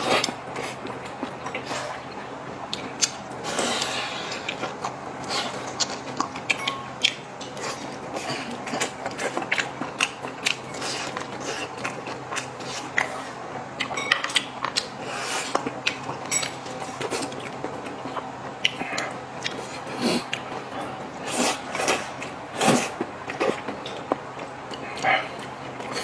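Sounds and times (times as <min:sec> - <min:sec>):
person chewing food: 0:00.0 - 0:26.0.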